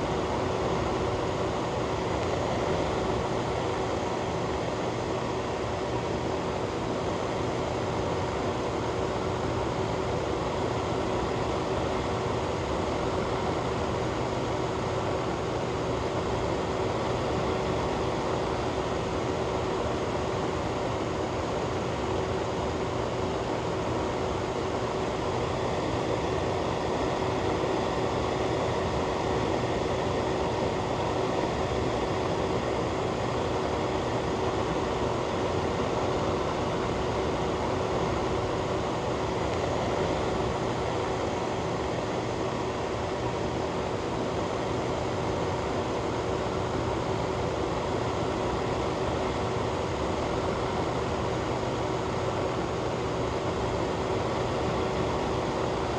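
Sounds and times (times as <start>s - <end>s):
ventilation fan running: 0.0s - 55.9s.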